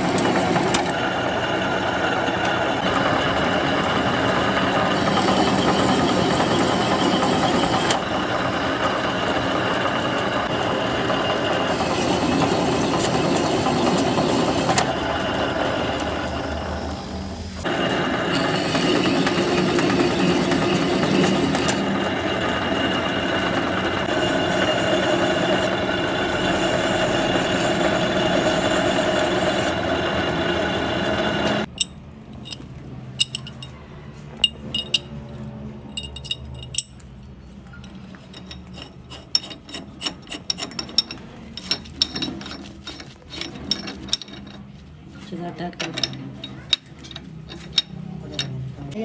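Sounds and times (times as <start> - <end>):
metal lathe cutting iron: 0.0 - 32.6
metal tools clinking: 31.7 - 33.8, 34.4 - 35.2, 35.9 - 37.1, 37.7 - 44.8, 45.7 - 48.6.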